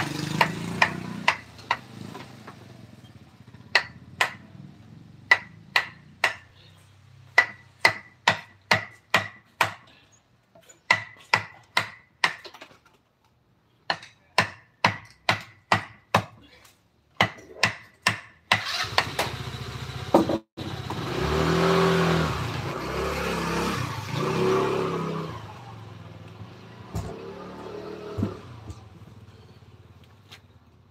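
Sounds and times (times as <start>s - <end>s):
mallet striking chisel: 0.3s - 1.8s, 3.7s - 4.4s, 5.3s - 6.5s, 7.4s - 9.8s, 10.9s - 12.4s, 13.9s - 16.4s, 17.2s - 18.6s.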